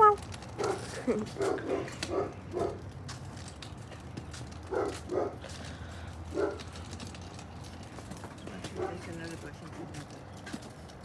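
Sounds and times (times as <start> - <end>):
dog barking: 0.0 - 2.8, 4.7 - 5.4, 6.3 - 6.6, 8.8 - 9.0.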